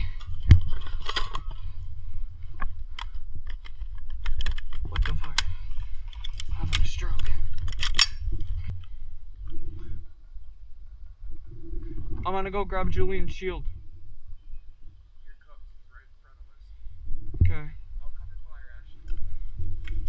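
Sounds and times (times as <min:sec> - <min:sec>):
sharp clicks of gun handling: 0:00.0 - 0:01.7, 0:02.6 - 0:08.6
low rumble on microphone: 0:00.0 - 0:20.0.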